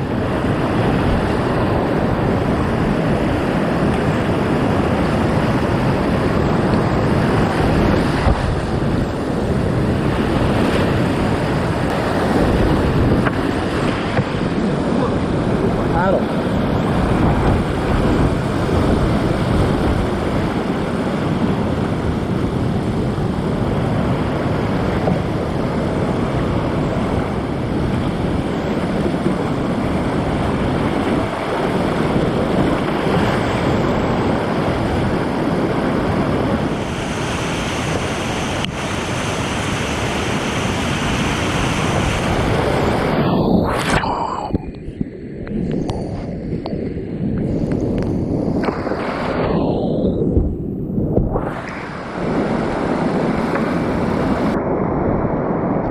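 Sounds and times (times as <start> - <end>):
whitewater rapids rushing: 23.5 - 44.5.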